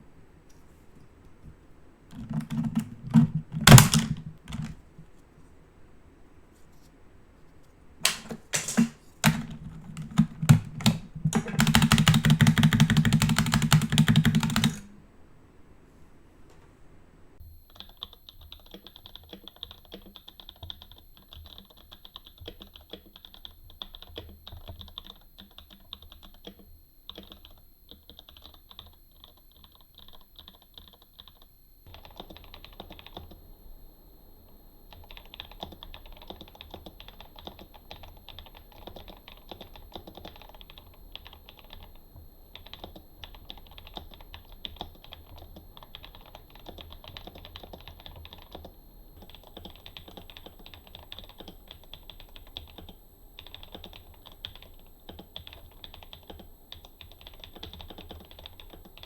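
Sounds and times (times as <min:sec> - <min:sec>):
keyboard key clicks: 0:02.1 - 0:04.8, 0:08.0 - 0:14.9.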